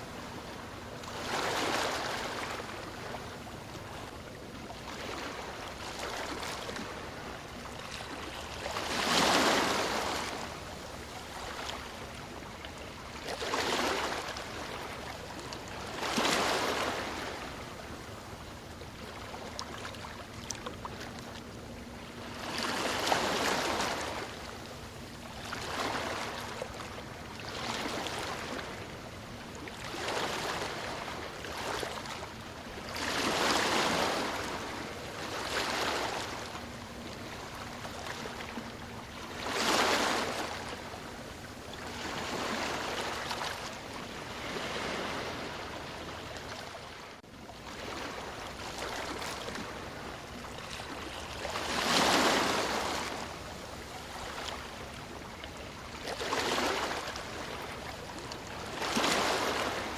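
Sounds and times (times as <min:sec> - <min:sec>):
ocean waves breaking: 0:00.0 - 0:59.9.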